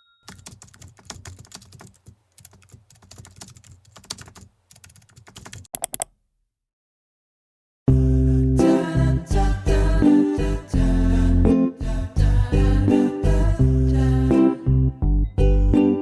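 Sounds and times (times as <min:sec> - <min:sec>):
keyboard typing clicks: 0:00.3 - 0:06.2.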